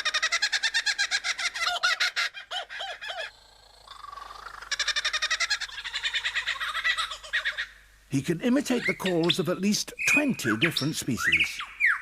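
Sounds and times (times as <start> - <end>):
lyrebird mimicking bird calls: 0.0 - 7.8.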